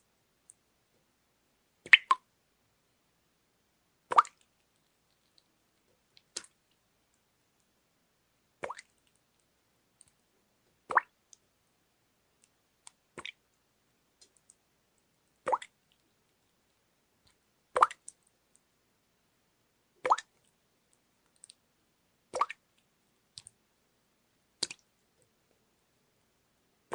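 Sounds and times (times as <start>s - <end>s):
faint small ticks: 0.4s - 0.6s, 4.2s - 7.7s, 8.6s - 10.2s, 14.2s - 18.7s, 20.0s - 21.6s, 22.3s - 23.6s
water dripping: 1.8s - 2.3s, 4.1s - 7.7s, 8.6s - 10.2s, 10.8s - 11.5s, 12.4s - 13.6s, 14.2s - 18.6s, 20.0s - 21.6s, 22.3s - 23.6s, 24.6s - 25.3s.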